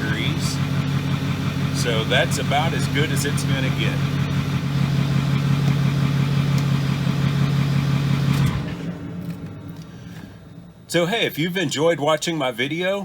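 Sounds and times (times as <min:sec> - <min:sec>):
pickup engine idling: 0:00.0 - 0:12.0
air conditioner hum: 0:09.4 - 0:13.0.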